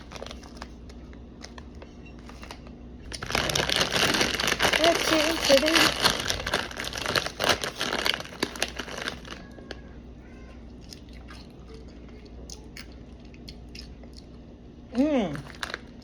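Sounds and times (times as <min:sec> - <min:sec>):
tortilla chips crunching: 0:00.0 - 0:09.6, 0:15.3 - 0:16.0
chewing: 0:10.7 - 0:14.4.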